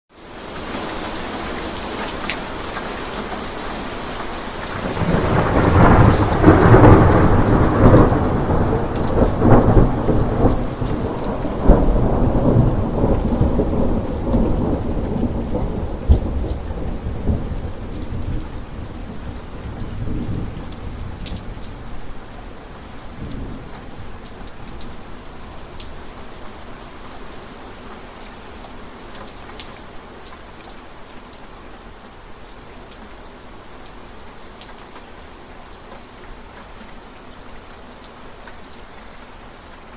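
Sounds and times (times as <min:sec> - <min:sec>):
steady rain falling: 0:00.1 - 0:39.9
thunder rolling and cracking: 0:04.7 - 0:21.6.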